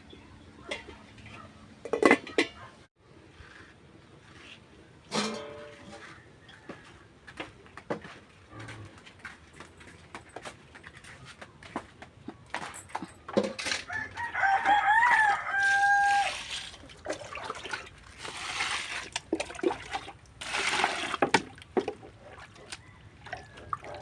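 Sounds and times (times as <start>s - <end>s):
metal cookware clattering: 0.6s - 2.8s, 5.1s - 6.2s, 12.6s - 14.0s
metal clang ringing: 5.1s - 5.9s.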